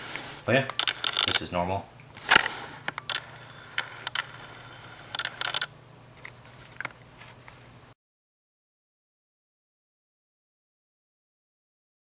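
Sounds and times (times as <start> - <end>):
steady low hum: 0.0 - 8.0
camera shutter clicks: 0.7 - 7.7
quick ticking of camera lens: 0.7 - 7.7.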